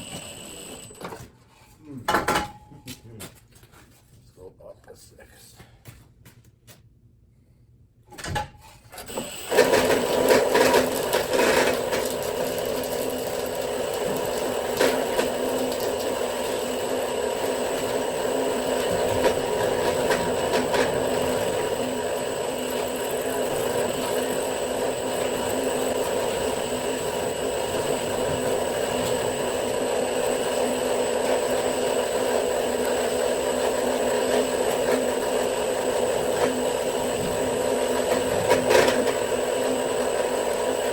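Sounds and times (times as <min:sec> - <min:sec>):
electric drill whining: 0:00.0 - 0:01.1, 0:09.1 - 0:40.9.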